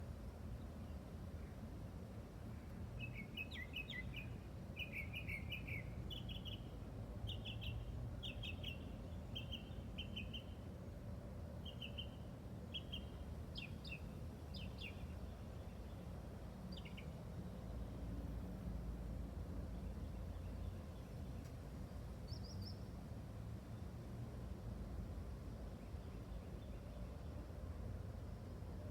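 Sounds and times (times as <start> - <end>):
songbird chirping: 2.6 - 10.7, 11.6 - 16.1.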